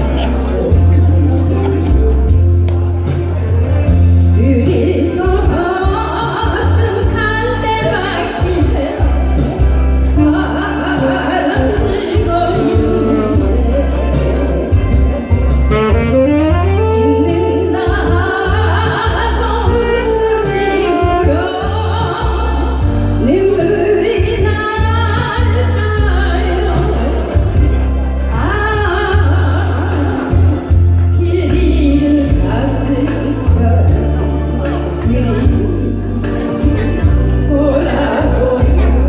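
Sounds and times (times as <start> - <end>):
backing track with heavy bass: 0.0 - 39.0
person singing pop ballad: 0.0 - 39.0
saxophone-like instrumental line: 12.4 - 23.2.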